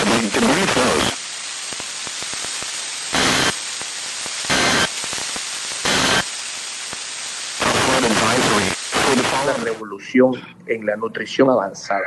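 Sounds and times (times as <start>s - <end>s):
radio static: 0.0s - 12.0s
digital data tone bursts: 3.1s - 3.6s, 4.4s - 6.3s.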